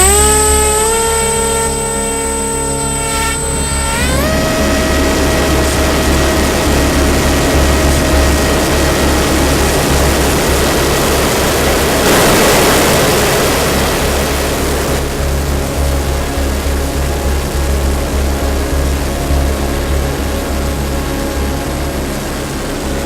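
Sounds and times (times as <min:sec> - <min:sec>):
electric motor whine: 0:00.0 - 0:23.0
wind rush and buffeting: 0:04.2 - 0:16.9.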